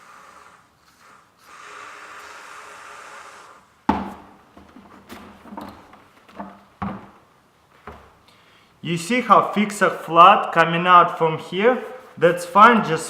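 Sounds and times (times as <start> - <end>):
air hissing out of a ball: 0.0 - 3.9
loud knock: 3.9 - 4.4.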